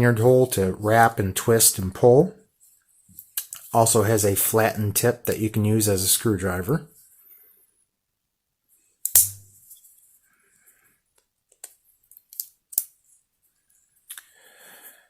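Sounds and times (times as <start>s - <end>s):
multi-tool metallic snap: 9.0s - 9.5s.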